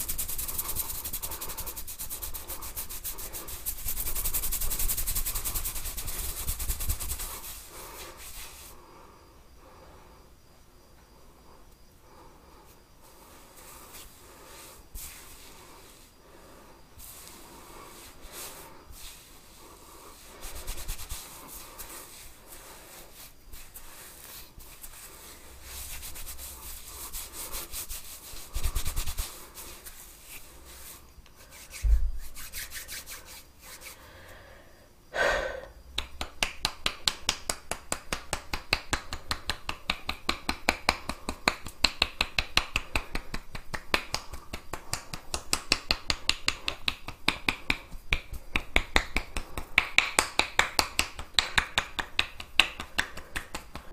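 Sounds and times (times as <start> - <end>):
hands rubbing through hair: 0.0 - 8.8, 13.1 - 16.4, 17.0 - 34.0, 36.0 - 53.9
short thump: 31.9 - 32.2
fast patter of light taps: 36.0 - 53.9.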